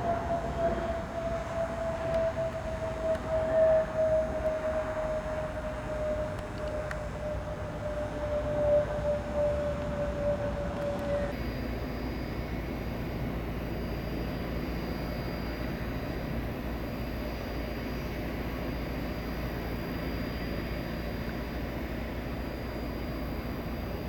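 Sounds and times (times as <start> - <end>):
jet engine rumble and whine: 0.0 - 24.0.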